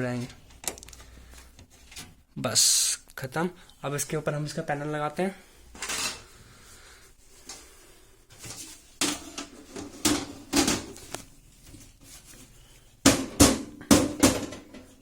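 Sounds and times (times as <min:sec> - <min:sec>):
sharp hits of panel: 0:13.1 - 0:14.6
computer case panel knocks and clatters: 0:13.1 - 0:14.8.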